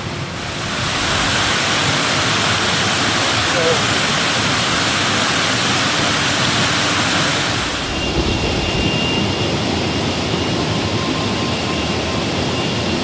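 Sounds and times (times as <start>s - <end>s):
rushing water: 0.0s - 9.9s
dull low rumbling: 7.8s - 11.0s.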